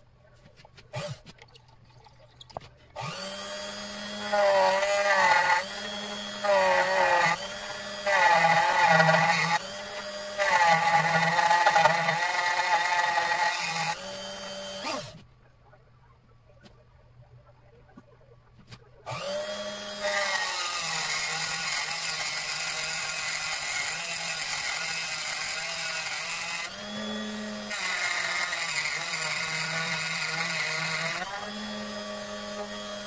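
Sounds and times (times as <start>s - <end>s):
milling machine spindle whine: 3.0s - 15.0s, 19.1s - 33.0s.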